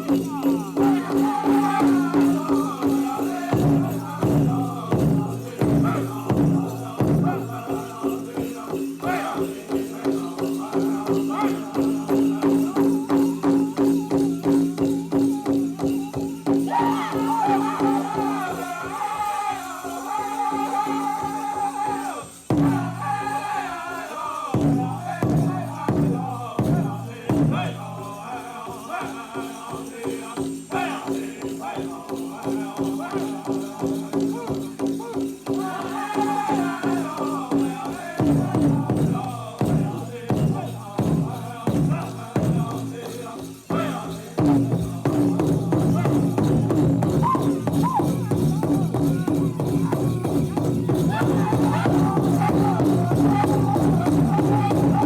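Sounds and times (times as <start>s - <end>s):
big drum beats: 0.0s - 19.0s, 22.5s - 23.3s, 24.5s - 28.8s, 29.7s - 55.0s
group singing in chorus: 0.0s - 55.0s
jingling rattles: 0.0s - 55.0s
big drum beating: 44.3s - 55.0s.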